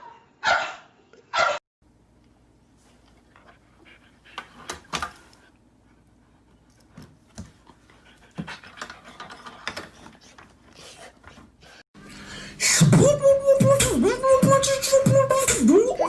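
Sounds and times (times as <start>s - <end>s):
dog panting: 2.9s - 11.8s.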